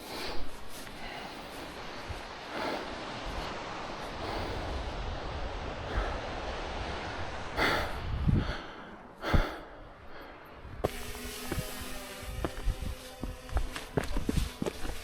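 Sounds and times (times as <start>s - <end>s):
wind buffeting microphone: 1.0s - 15.0s
person breathing sharply: 7.5s - 10.5s.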